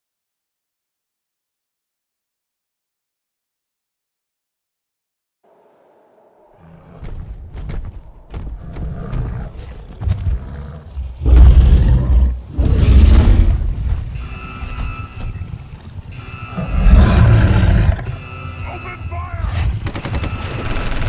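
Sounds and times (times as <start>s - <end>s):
monster roars: 16.6s - 18.2s.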